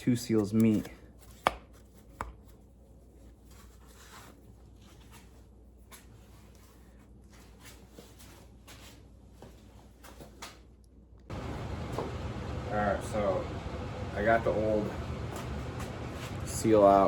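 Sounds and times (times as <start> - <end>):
low steady hum: 10.7 - 17.0.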